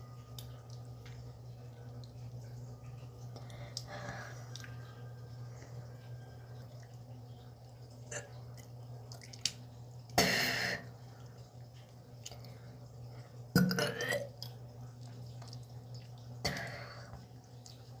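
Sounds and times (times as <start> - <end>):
steady low hum: 0.0 - 18.0
person burping: 13.6 - 14.4.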